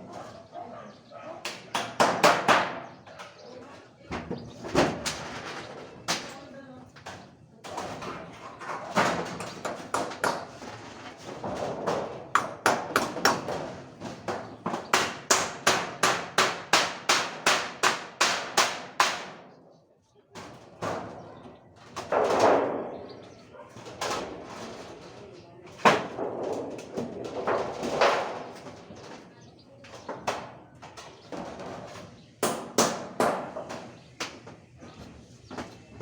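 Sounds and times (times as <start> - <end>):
voices: 0.0 - 2.0, 2.8 - 10.8, 19.8 - 32.4
sharp knocks: 11.6 - 19.4.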